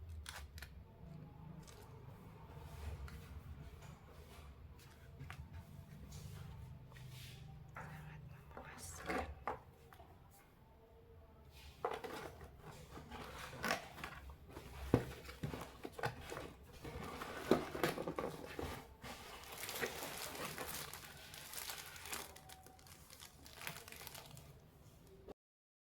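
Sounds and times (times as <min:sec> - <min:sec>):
plastic packaging crinkling: 0:15.4 - 0:25.2.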